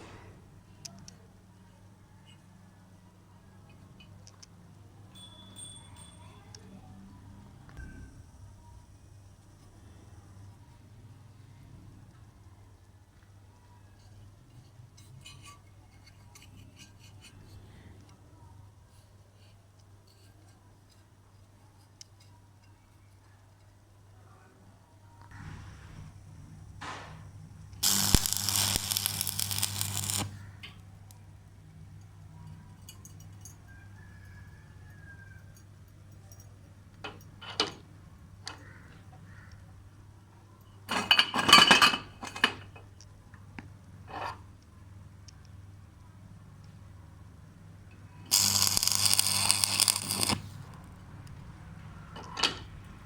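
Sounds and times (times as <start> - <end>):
low electrical hum: 0.0 - 53.0
arc welder crackling: 25.3 - 31.2, 48.2 - 51.6.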